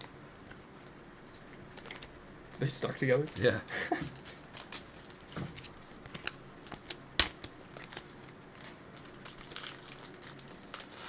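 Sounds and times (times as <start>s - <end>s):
foil wrapper crinkling: 2.6s - 11.0s.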